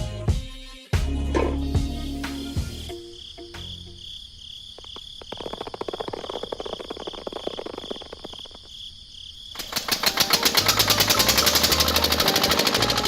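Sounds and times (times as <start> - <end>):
crickets chirping: 1.5 - 12.4
fast clicking: 4.8 - 8.8, 9.6 - 13.0
rapid rhythmic sound: 9.6 - 13.0.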